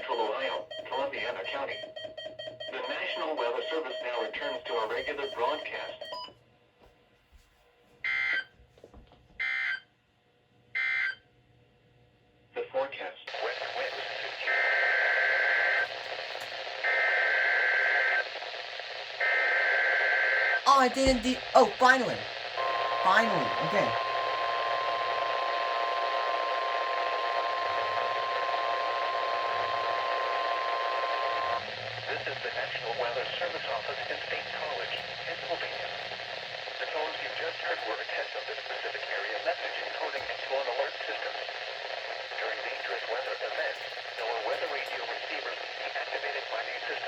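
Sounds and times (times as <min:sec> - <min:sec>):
steady warning alarm tone: 0:00.7 - 0:06.3.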